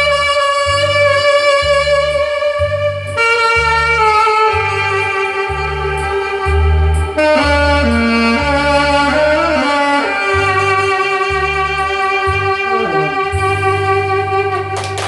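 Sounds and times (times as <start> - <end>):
saxophone melody: 0.0 - 14.8
backing track with pulsing bass: 0.0 - 15.0.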